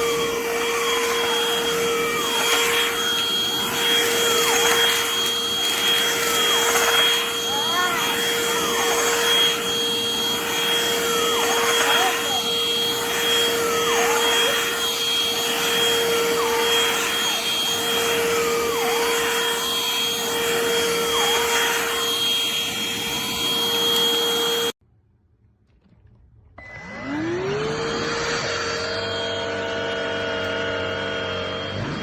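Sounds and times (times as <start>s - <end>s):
hand vacuum whining: 0.0s - 24.8s.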